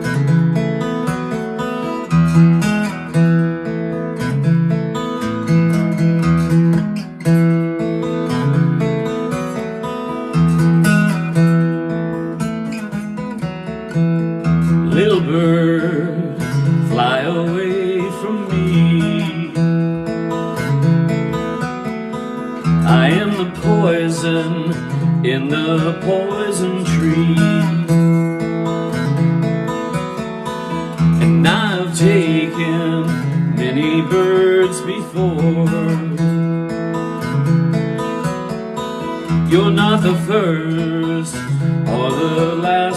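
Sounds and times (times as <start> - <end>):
acoustic guitar strumming: 0.0 - 42.9
person singing: 14.8 - 19.7, 22.8 - 28.3, 30.5 - 36.4, 39.1 - 42.9.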